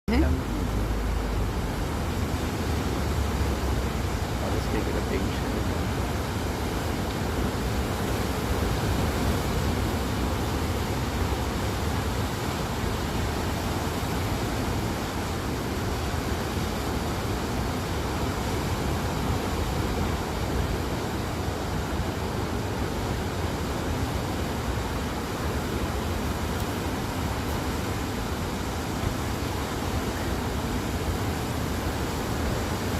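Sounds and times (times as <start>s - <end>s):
ocean surf washing over rocks: 0.1s - 32.9s.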